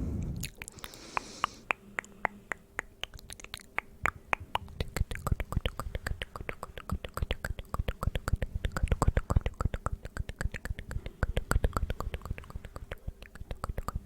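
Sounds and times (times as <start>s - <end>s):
short breath: 0.0s - 2.2s
wet mouth clicks and pops: 0.2s - 14.0s.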